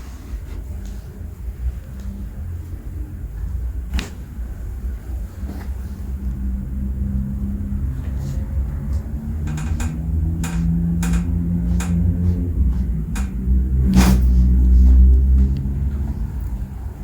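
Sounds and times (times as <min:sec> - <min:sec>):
low steady rumble: 0:00.8 - 0:17.0
sharp clicks: 0:09.5 - 0:12.1.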